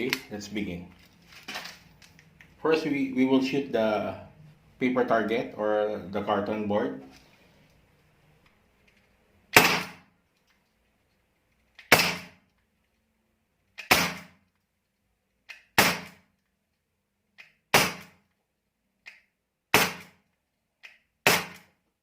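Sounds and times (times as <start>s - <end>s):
pellet revolver shots: 9.5s - 10.1s, 11.8s - 12.4s, 13.8s - 14.4s, 15.5s - 16.2s, 17.7s - 18.2s, 19.7s - 20.2s, 21.2s - 21.7s.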